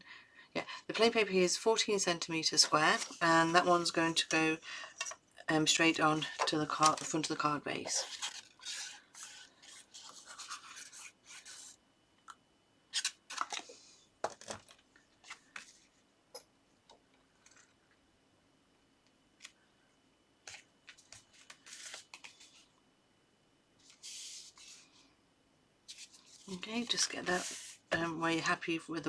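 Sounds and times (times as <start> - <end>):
scratchy paper rubbing: 7.9 - 11.8, 25.9 - 27.8.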